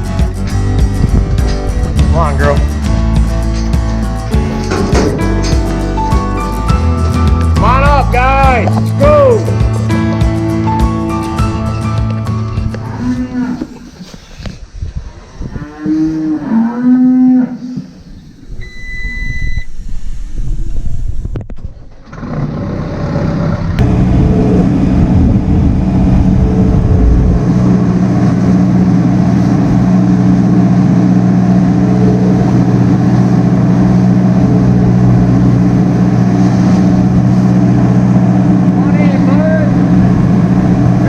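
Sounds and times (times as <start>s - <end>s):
farm machine engine humming: 0.0s - 14.1s, 22.0s - 41.0s
cows mooing: 12.7s - 14.1s, 15.1s - 18.0s, 31.5s - 41.0s
steady electronic beep: 18.6s - 19.8s.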